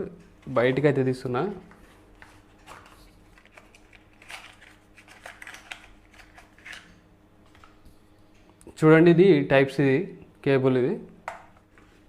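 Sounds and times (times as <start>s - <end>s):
packaging rustling: 1.5s - 7.7s.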